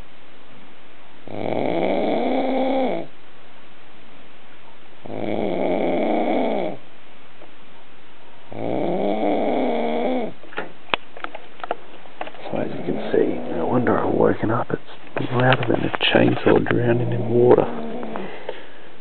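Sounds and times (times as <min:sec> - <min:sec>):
person snoring loudly: 0:01.3 - 0:03.1, 0:05.1 - 0:06.8, 0:08.5 - 0:10.3, 0:12.6 - 0:13.9, 0:17.0 - 0:18.5.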